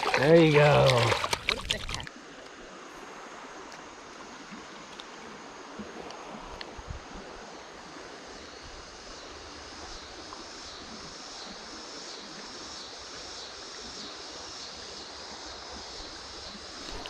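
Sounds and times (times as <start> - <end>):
water running over rocks: 0.0 - 2.7.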